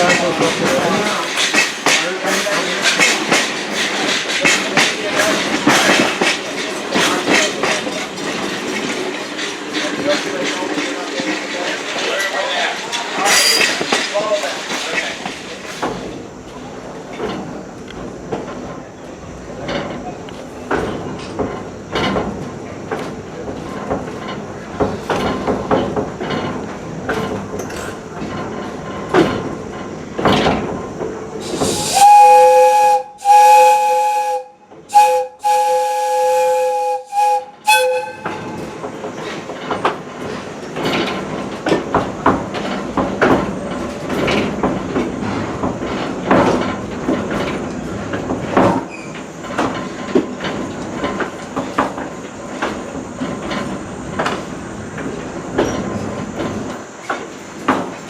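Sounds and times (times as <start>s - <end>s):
train rattling over rail joints: 0.0s - 58.0s
steam whistle blowing: 31.4s - 38.7s.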